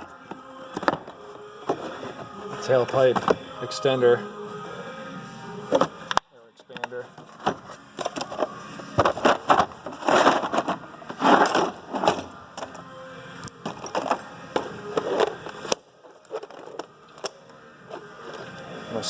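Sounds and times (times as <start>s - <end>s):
tools clattering in drawer: 0.7s - 3.4s, 7.1s - 12.8s, 13.6s - 17.4s.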